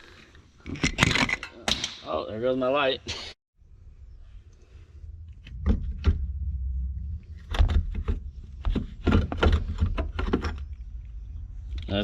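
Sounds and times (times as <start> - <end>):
low rumbling handling noise: 4.4 - 12.0
tools knocking and clattering: 7.5 - 10.8.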